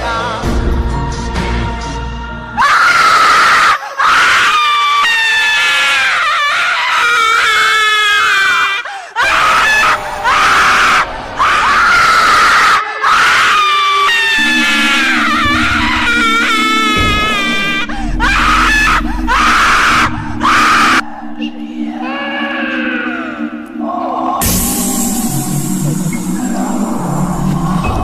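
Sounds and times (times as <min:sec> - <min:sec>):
shrill ghostly screams: 0:02.6 - 0:23.6.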